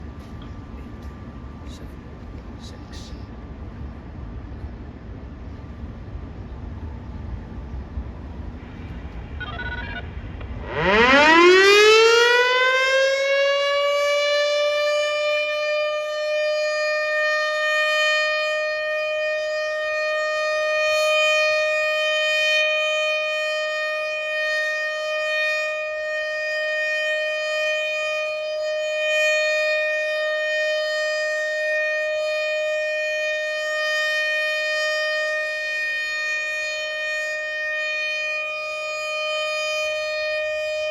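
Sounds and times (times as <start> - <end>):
siren winding up: 9.4 - 12.6.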